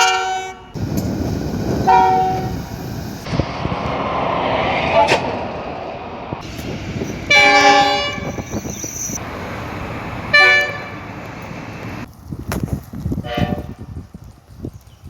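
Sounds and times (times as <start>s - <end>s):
train horn blasts: 0.0s - 0.8s, 1.7s - 4.1s, 7.2s - 8.6s, 10.3s - 11.1s, 13.2s - 13.7s
background rumble: 0.8s - 13.1s.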